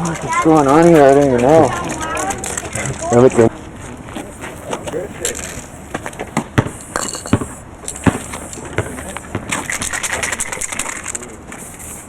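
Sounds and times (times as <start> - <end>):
sharp knocks: 5.9 - 9.7
spray paint can hissing: 6.8 - 12.0.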